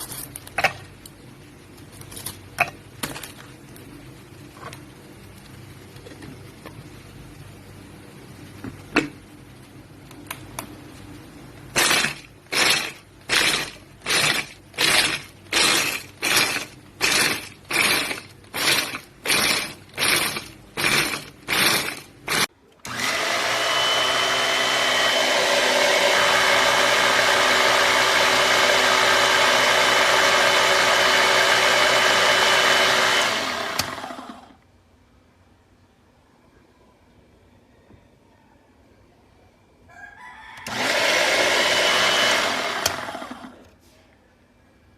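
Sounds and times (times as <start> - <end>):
electric food chopper motor: 11.8 - 34.6, 40.6 - 43.7.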